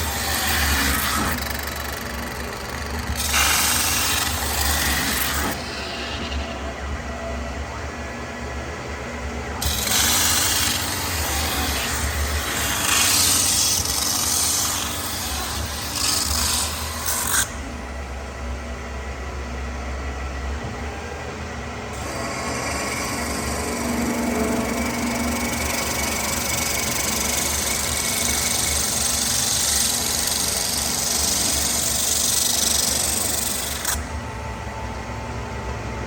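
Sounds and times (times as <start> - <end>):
metal-spinning tool scraping sheet metal: 0.0 - 6.7, 9.6 - 17.6, 22.0 - 34.1
low machine hum: 0.0 - 36.0.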